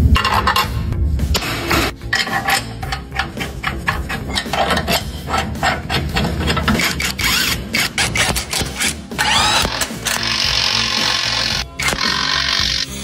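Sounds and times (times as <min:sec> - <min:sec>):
music: 0:00.0 - 0:13.0
metallic knocks and clatter of tools: 0:02.0 - 0:07.2.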